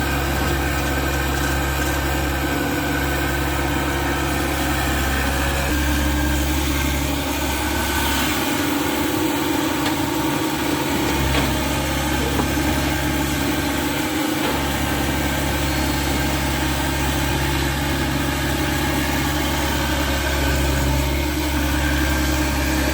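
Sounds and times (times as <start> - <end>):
diesel engine running: 0.0 - 22.9.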